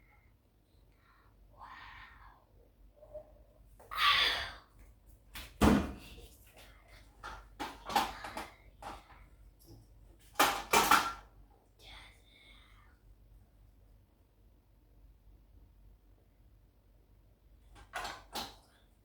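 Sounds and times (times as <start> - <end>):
objects knocking and clacking: 7.2 - 9.0, 9.6 - 11.3.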